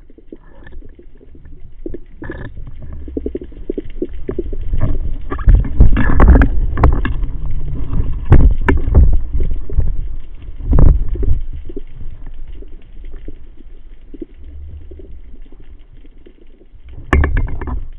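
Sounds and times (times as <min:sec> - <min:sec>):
water sloshing and bubbling: 0:00.0 - 0:17.9
knocks and splashes: 0:07.9 - 0:09.2.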